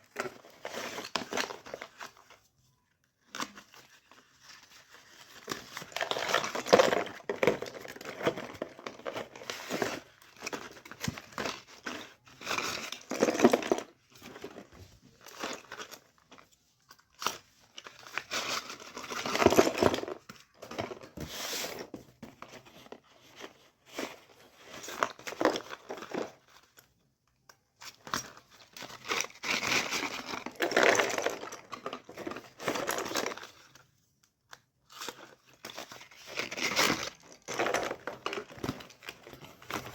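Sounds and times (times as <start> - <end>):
packaging crinkling and tearing: 27.9 - 33.8, 34.8 - 39.9.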